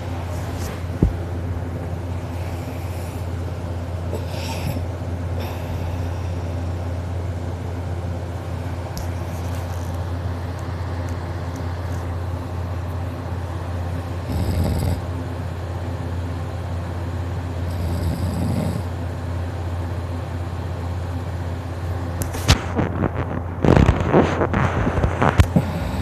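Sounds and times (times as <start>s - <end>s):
steady low hum: 0.0s - 26.0s
man snoring loudly: 14.2s - 15.1s, 17.6s - 18.9s, 25.5s - 26.0s.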